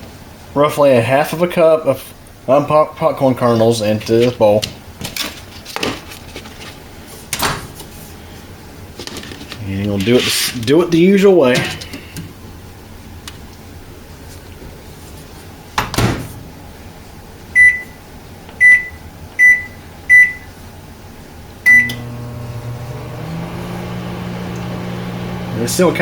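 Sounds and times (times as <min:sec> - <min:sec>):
microwave door shutting: 0:15.8 - 0:16.5
microwave keypad beeps: 0:17.6 - 0:18.0, 0:18.6 - 0:20.5, 0:21.7 - 0:22.0
microwave oven humming: 0:21.6 - 0:26.0.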